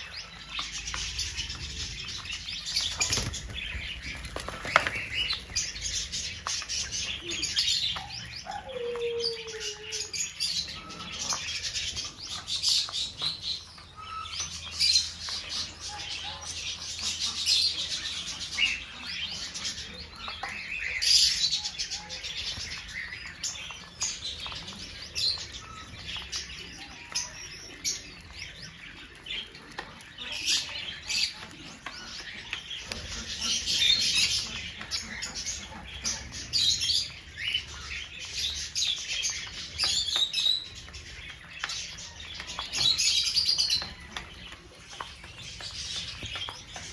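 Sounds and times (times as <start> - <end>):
small birds chirping: 0.0 - 46.9.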